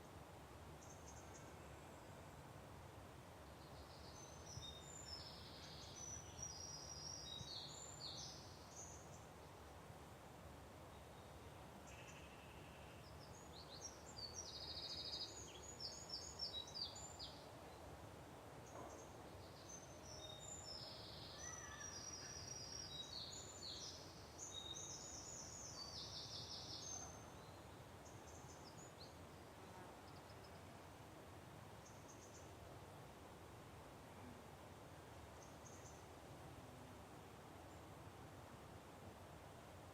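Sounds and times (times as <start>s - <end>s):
faint steady background hiss: 0.0s - 39.9s
songbirds chirping and trilling: 3.4s - 9.4s, 10.9s - 17.9s, 18.6s - 30.8s.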